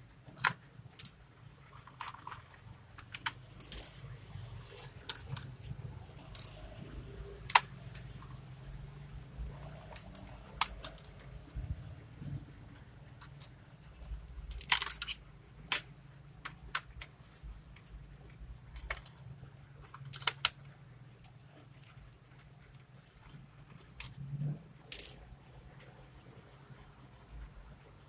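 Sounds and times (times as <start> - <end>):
laptop parts clicking and knocking: 0.3 - 4.0, 7.4 - 8.4, 9.9 - 11.4, 13.2 - 22.9.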